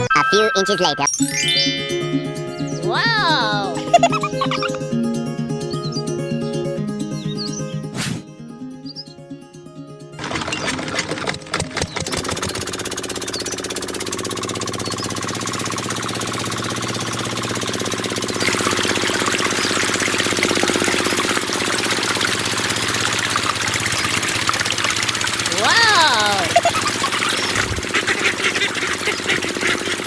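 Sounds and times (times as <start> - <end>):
small engine knocking: 10.2 - 30.0.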